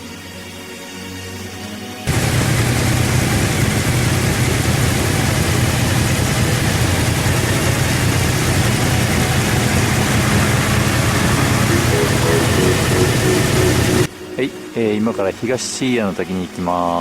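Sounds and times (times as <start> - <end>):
motorcycle engine running: 2.1 - 14.1.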